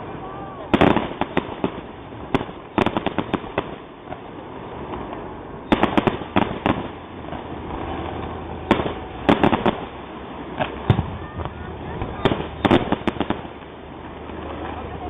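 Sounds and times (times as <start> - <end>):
fireworks bangs and crackles: 0.0 - 15.0
rumbling echo: 4.8 - 15.0.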